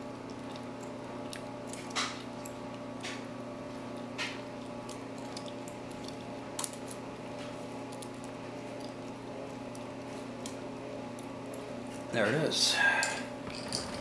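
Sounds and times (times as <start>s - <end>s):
low electrical hum: 0.0s - 14.0s
lock picks clicking and scraping: 13.5s - 14.0s.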